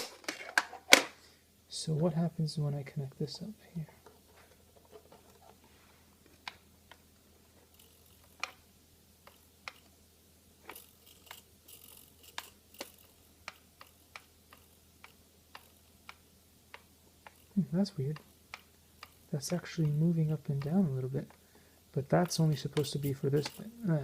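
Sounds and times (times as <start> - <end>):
small clicks and taps from handling parts: 7.8 - 8.6, 9.2 - 10.0, 10.7 - 17.5, 18.1 - 21.4, 22.2 - 23.7.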